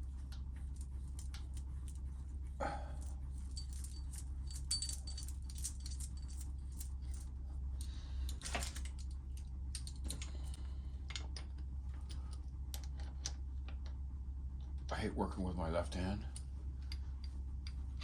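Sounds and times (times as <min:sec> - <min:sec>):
steady low hum: 0:00.0 - 0:18.0
metallic clinks of hand tools: 0:03.0 - 0:06.4.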